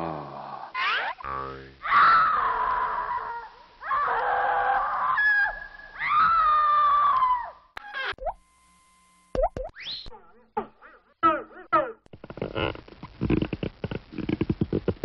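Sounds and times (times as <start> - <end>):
cartoon creaky squeaks: 7.8 - 8.3.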